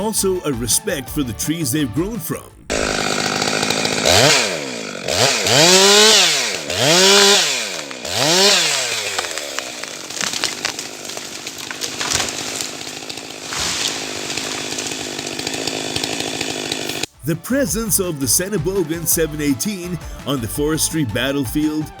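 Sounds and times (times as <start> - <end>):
chainsaw engine revving: 2.6 - 22.0.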